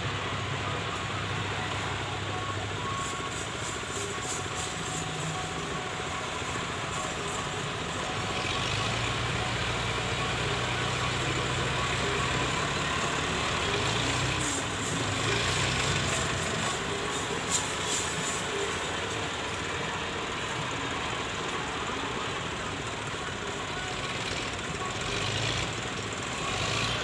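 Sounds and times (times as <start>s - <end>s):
tractor diesel engines running: 0.0s - 27.0s.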